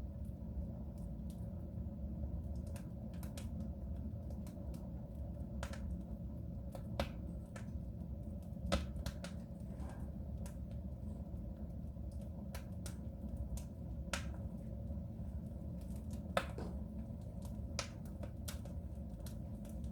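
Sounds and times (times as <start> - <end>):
low rumble of burning fire: 0.0 - 19.9
wood fire pops and snaps: 2.5 - 4.9, 5.5 - 6.1, 6.7 - 10.6, 12.1 - 14.6, 15.7 - 19.9.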